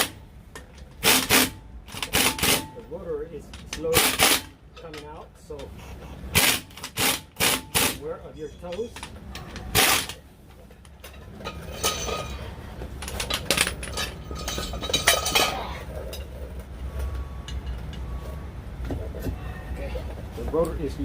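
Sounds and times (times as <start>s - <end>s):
wrench and bolts clinking: 6.6s - 18.1s.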